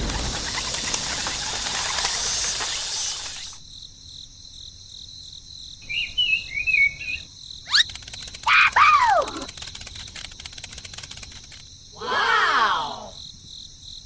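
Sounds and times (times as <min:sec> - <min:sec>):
falling whistle-like calls: 0:00.0 - 0:03.6, 0:05.8 - 0:09.6
warbling bird chirps: 0:00.0 - 0:03.6, 0:05.8 - 0:11.3
high insect-like trill: 0:05.9 - 0:11.8.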